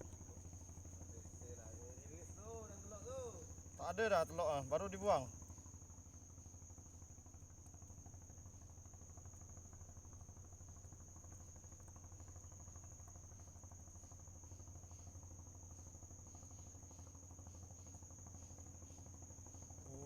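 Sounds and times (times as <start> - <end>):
crickets chirping: 0.0 - 20.0
low steady hum: 0.0 - 20.0.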